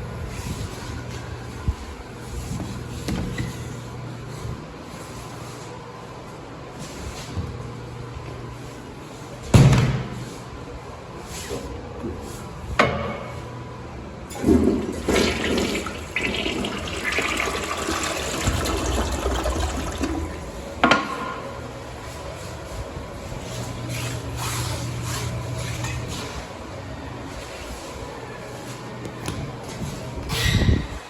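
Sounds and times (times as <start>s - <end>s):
toilet flushing: 14.3s - 20.8s.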